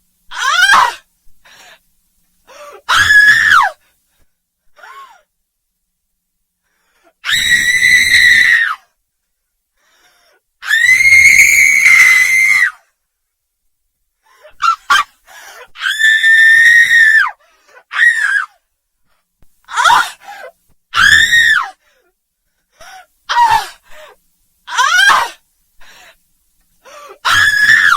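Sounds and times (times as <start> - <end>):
woman screaming: 0.3 - 1.0, 2.9 - 3.7, 10.6 - 12.7, 19.7 - 20.1, 24.7 - 25.4, 27.2 - 27.9.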